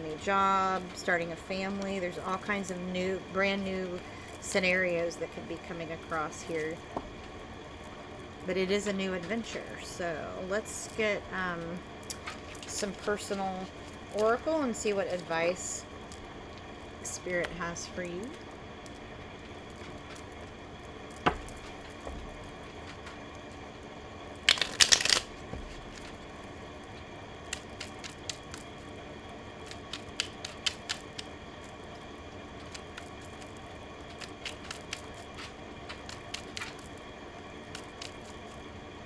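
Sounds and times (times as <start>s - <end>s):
cards flicking: 21.1s - 23.3s, 24.4s - 29.0s, 29.6s - 38.6s
cards clicking laid down: 24.5s - 26.2s, 27.5s - 28.7s, 29.7s - 31.3s, 34.1s - 36.9s.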